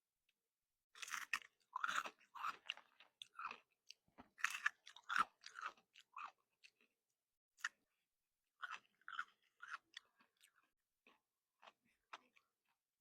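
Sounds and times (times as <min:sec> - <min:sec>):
candy crunching while chewed: 0:00.9 - 0:07.0, 0:08.6 - 0:12.8.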